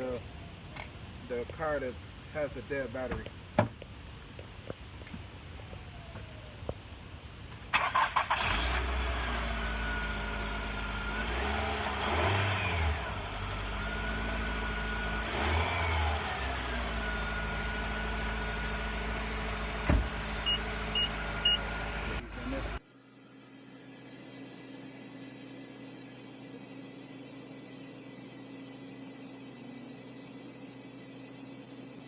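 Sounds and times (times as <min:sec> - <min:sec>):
car engine starting and idling: 0:05.0 - 0:22.8
engine revving: 0:07.8 - 0:22.8.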